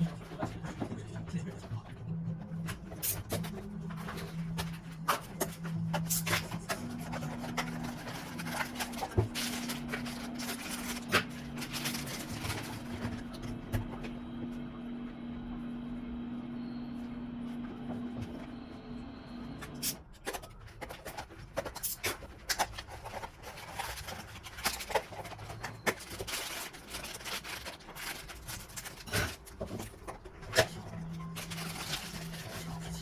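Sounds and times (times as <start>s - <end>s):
low steady hum: 0.0s - 19.8s, 26.4s - 33.0s
plastic packaging crackling: 3.3s - 13.6s, 20.4s - 33.0s.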